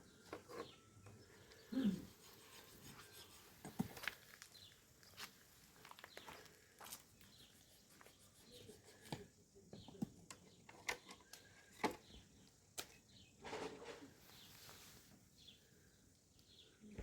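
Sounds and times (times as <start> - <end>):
faint bird chirps: 0.0 - 13.4
rustling: 13.4 - 15.6.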